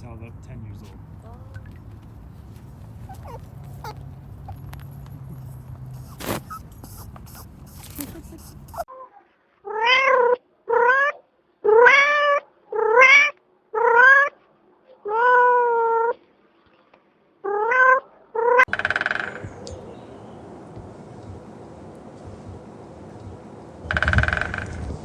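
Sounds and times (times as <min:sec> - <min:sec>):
steady low hiss: 0:00.0 - 0:08.9
cat meowing: 0:02.2 - 0:08.9.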